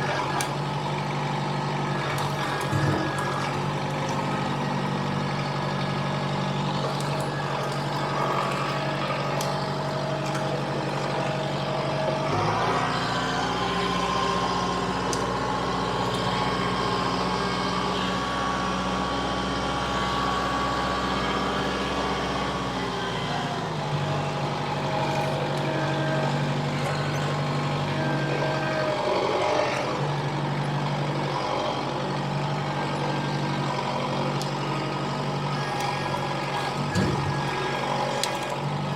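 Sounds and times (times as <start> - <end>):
tractor diesel engine revving: 0.0 - 38.9.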